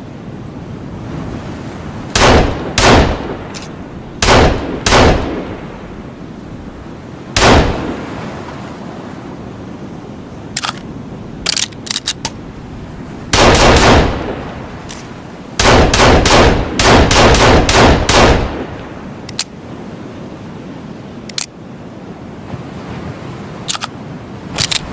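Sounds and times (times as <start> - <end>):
pistol shots: 2.2 - 3.4, 4.2 - 5.5, 7.4 - 7.9, 13.4 - 14.4, 15.6 - 18.7.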